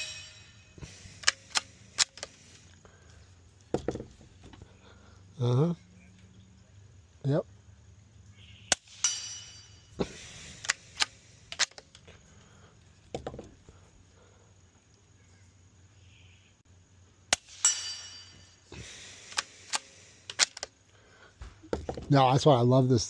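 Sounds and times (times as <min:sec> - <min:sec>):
metallic ringing: 0:00.0 - 0:01.0, 0:08.7 - 0:10.0, 0:17.4 - 0:18.7
rifle bolt clicks: 0:01.2 - 0:02.4, 0:10.6 - 0:12.0, 0:19.3 - 0:20.7.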